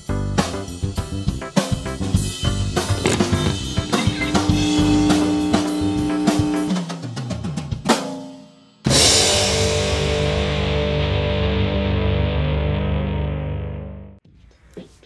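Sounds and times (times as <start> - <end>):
upbeat band music: 0.1 - 7.3
loud chord crash ringing: 3.0 - 6.9.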